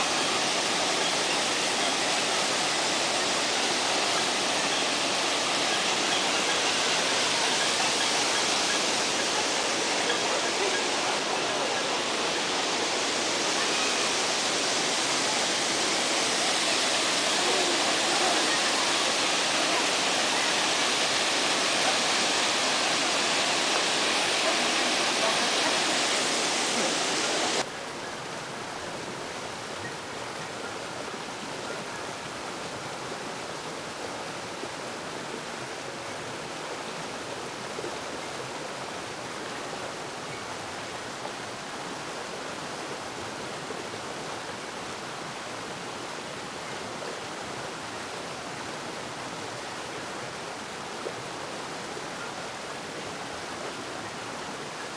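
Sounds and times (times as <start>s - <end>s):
running water rushing: 0.0s - 54.9s.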